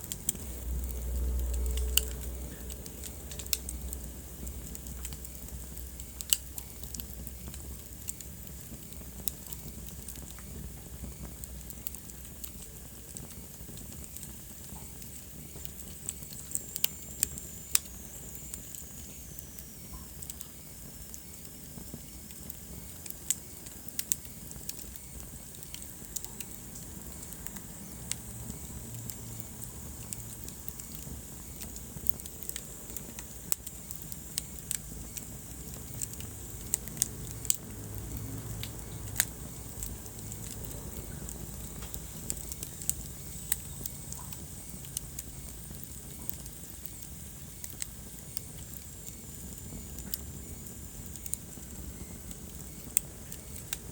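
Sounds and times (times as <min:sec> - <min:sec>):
wood fire crackling: 0:00.0 - 0:53.9.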